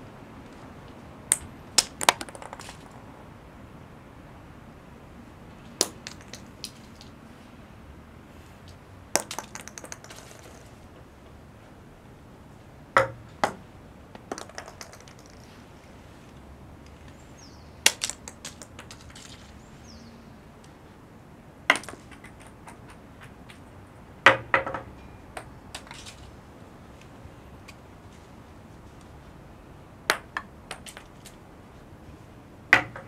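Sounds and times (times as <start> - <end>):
acorns clicking on stone paving: 1.3 - 3.1, 5.8 - 7.2, 8.7 - 11.0, 13.4 - 15.6, 17.8 - 19.6, 21.7 - 23.7, 25.4 - 26.4, 30.1 - 31.4.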